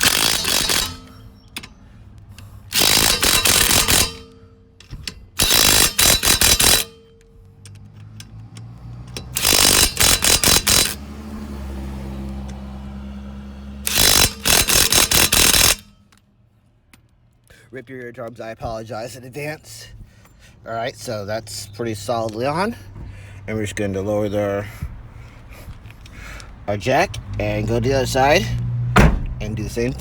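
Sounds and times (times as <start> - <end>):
impact wrench hammering: 0.0 - 1.8, 2.7 - 7.4, 9.0 - 11.0, 13.8 - 16.0, 29.0 - 29.4.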